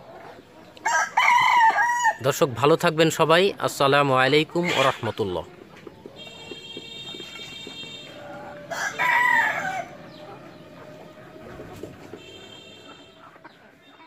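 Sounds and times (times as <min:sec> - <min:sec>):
chickens clucking: 0:00.0 - 0:14.0
rooster crowing: 0:00.8 - 0:02.2, 0:08.2 - 0:10.2.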